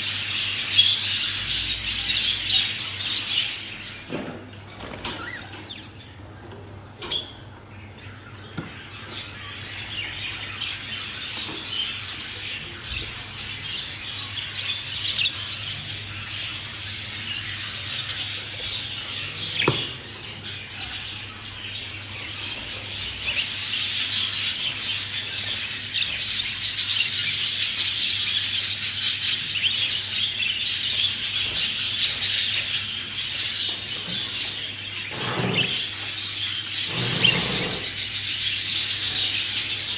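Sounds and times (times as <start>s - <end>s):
budgerigars chattering and chirping: 8.1s - 39.9s.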